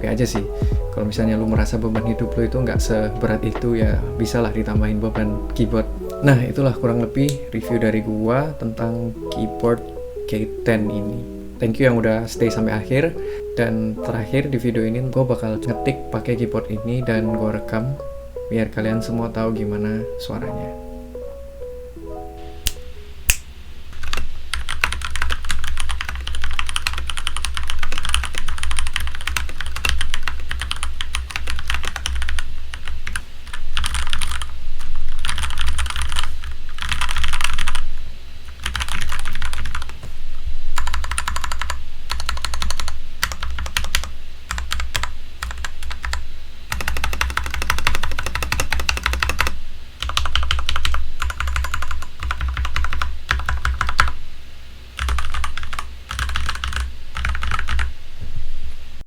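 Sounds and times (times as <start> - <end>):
mechanical keyboard typing: 24.0 - 37.8, 38.5 - 40.1, 40.8 - 54.2, 55.0 - 57.9.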